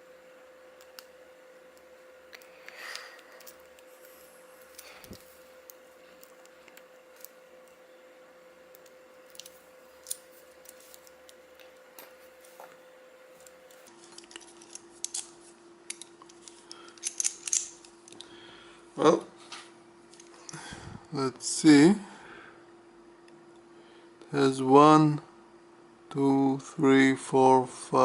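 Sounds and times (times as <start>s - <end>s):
steady low hum: 0.0s - 28.0s
padlock metal clicks: 15.9s - 17.7s.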